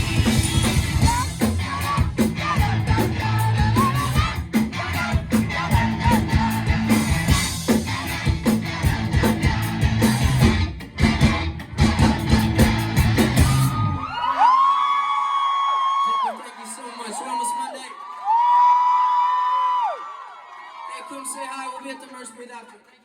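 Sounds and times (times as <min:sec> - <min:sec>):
live rock band playing: 0:00.0 - 0:14.0.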